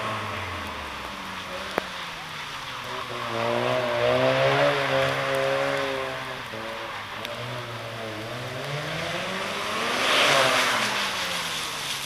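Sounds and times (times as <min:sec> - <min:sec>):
rotary engine revving: 0:02.8 - 0:12.0.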